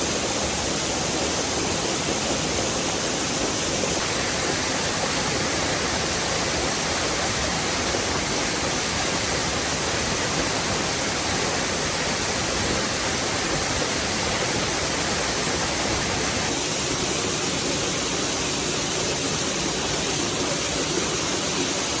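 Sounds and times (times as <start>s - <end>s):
waterfall rushing: 2.7s - 17.7s.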